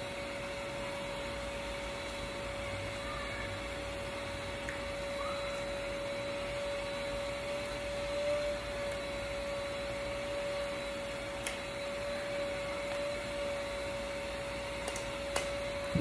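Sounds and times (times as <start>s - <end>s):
machine hum with whine: 0.0s - 16.0s.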